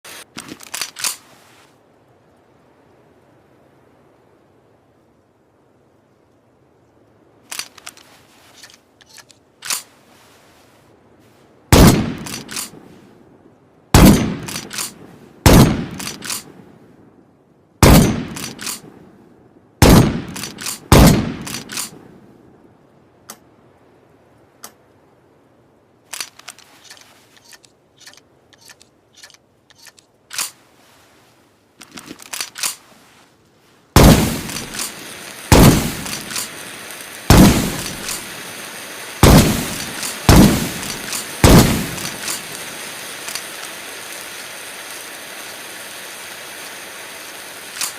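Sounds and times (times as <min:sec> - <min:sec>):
loud sharp bangs: 0:19.8 - 0:21.9, 0:34.0 - 0:36.7, 0:37.3 - 0:38.3, 0:39.2 - 0:42.6.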